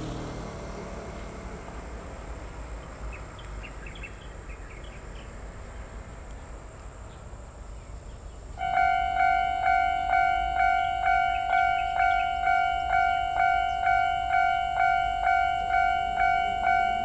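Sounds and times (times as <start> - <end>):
faint outdoor chirps: 0.0 - 17.0
level-crossing warning bell: 8.6 - 17.0.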